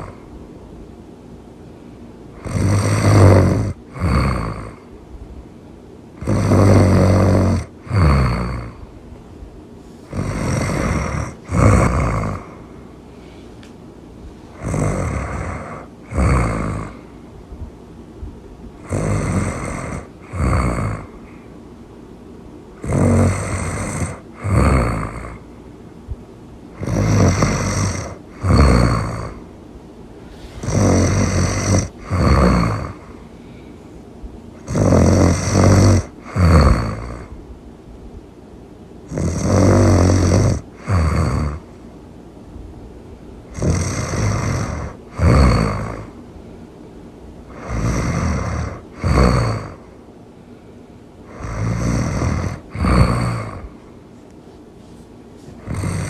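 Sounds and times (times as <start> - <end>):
loud snoring: 0.0 - 0.3, 2.4 - 4.9, 6.2 - 8.8, 10.1 - 12.8, 14.5 - 17.2, 18.8 - 21.4, 22.8 - 25.5, 26.7 - 29.5, 30.2 - 33.3, 34.6 - 37.3, 39.1 - 41.8, 43.5 - 46.2, 47.5 - 50.0, 51.2 - 53.8, 55.6 - 56.0.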